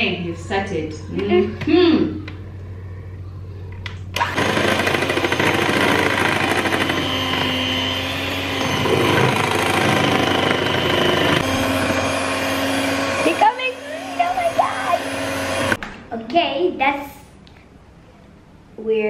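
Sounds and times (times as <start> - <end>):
electric hand mixer beating batter: 4.2 - 15.8.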